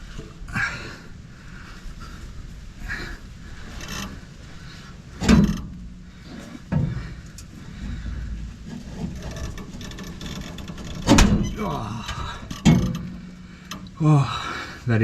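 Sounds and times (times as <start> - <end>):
wind rumble on microphone: 0.0 - 13.3
exhaust pipe clunking on metal: 5.1 - 14.0.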